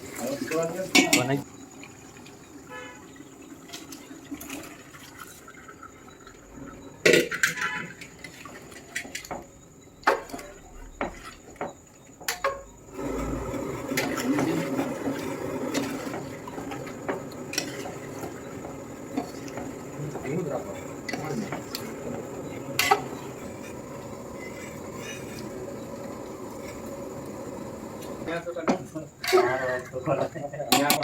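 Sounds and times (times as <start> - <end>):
metal utensils and pots clinking: 0.0 - 1.4, 7.0 - 25.9, 28.0 - 31.0
liquid sloshing or pouring: 3.2 - 6.8.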